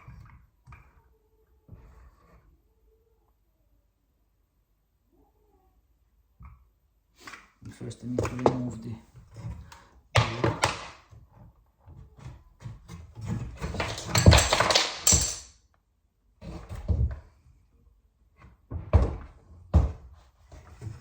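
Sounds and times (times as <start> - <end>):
wooden door knocks and thunks: 18.7 - 20.1.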